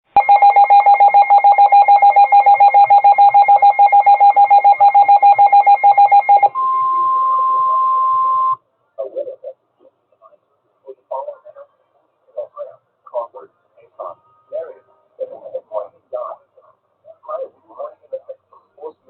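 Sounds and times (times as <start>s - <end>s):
faint voice: 8.6s - 19.0s.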